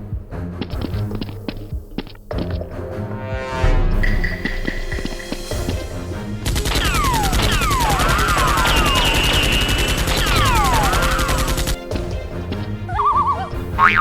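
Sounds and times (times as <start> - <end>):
rapid automatic gunfire: 6.5 - 11.8.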